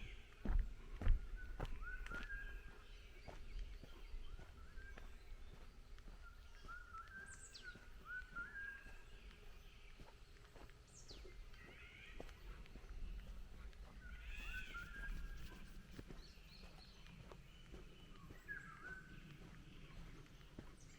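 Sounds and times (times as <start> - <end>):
birds whistling: 11.1 - 20.1.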